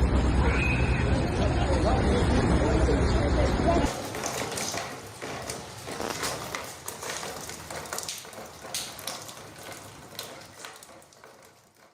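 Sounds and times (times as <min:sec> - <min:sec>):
heavy rain: 0:03.9 - 0:11.9
running water: 0:03.9 - 0:11.9.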